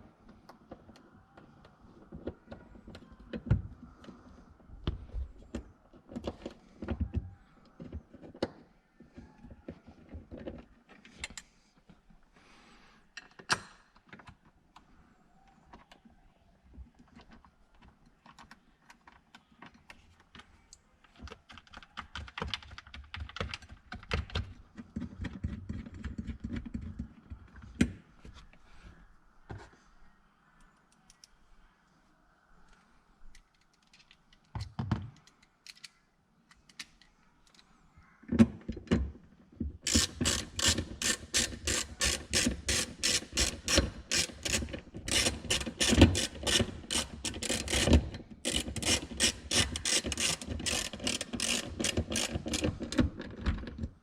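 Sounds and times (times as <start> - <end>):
tools being handled: 33.3 - 37.7, 39.8 - 53.9
ratchet wrench clicking: 39.9 - 47.9, 48.5 - 52.7.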